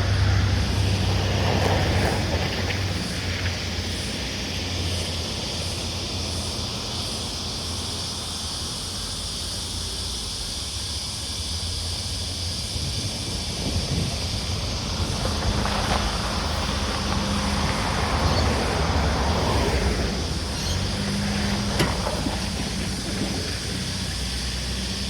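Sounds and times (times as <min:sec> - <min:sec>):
vehicle approaching: 0:00.0 - 0:25.0
steady high hiss: 0:03.0 - 0:25.0
low wind rumble: 0:11.4 - 0:25.0.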